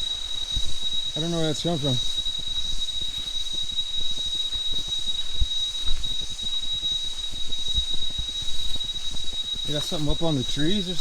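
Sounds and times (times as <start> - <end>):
high-pitched ringing: 0.0 - 6.0, 9.6 - 11.0.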